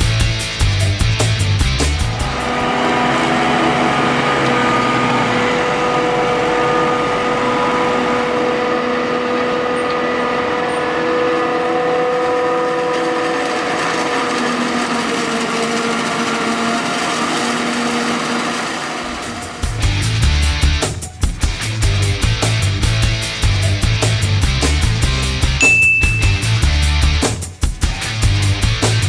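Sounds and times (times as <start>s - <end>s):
machine whining: 1.9s - 24.2s.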